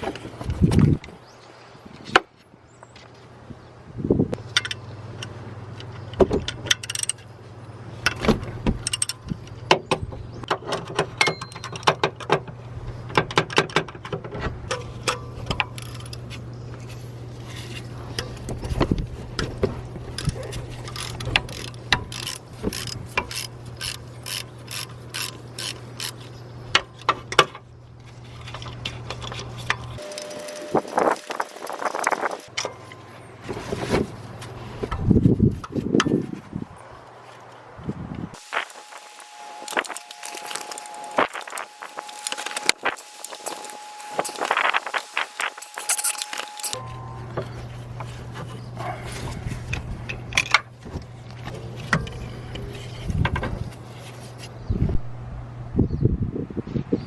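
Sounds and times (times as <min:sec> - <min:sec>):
ratchet wrench clicking: 0:21.0 - 0:26.2, 0:30.0 - 0:32.5, 0:38.4 - 0:46.8.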